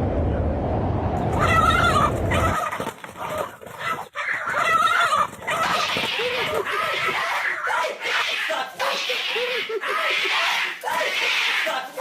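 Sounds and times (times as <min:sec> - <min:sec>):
low rumbling noise: 0:00.0 - 0:02.6.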